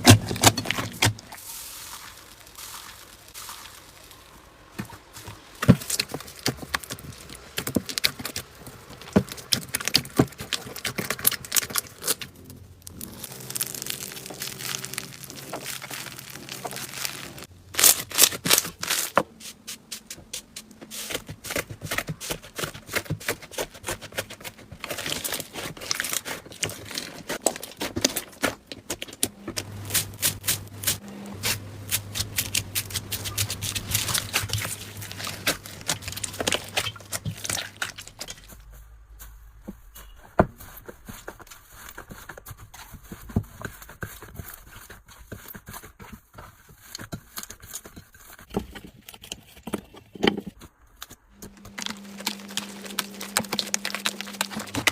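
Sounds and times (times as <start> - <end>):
slime crackling and popping: 0.0 - 19.2, 22.5 - 38.6, 51.5 - 54.9.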